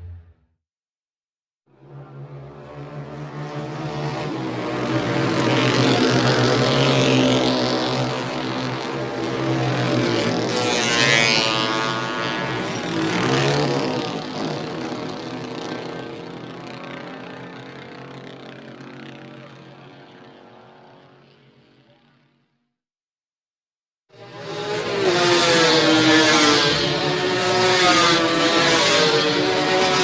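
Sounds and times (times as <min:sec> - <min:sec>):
motorcycle engine revving: 0:00.0 - 0:00.4.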